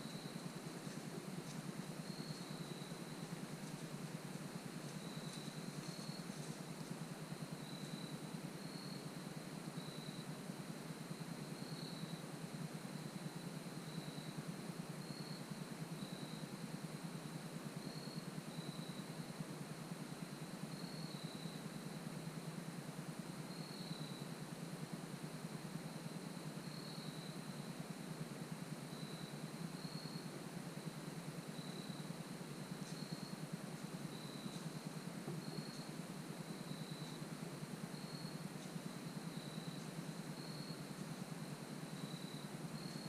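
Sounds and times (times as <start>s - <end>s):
high insect buzz: 0.0s - 9.1s, 29.0s - 43.0s.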